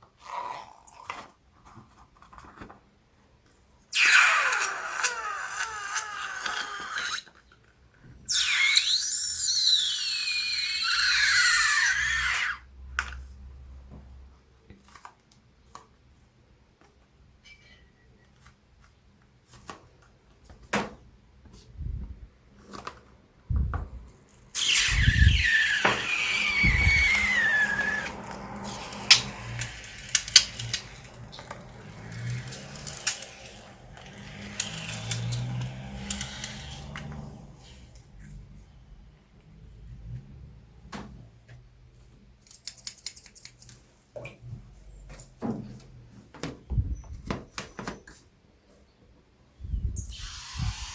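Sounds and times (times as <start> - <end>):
air squealing from balloon: 3.9 - 7.3, 8.3 - 12.6, 24.6 - 37.9, 50.0 - 50.9
small clicks and handling noises: 29.1 - 37.2, 42.4 - 44.4.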